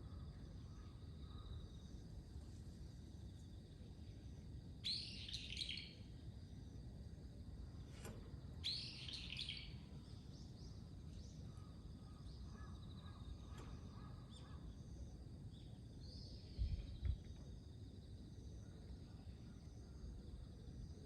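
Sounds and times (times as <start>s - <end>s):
scattered bird chirps: 4.8s - 6.0s, 8.6s - 10.6s
low background rumble: 5.9s - 21.0s.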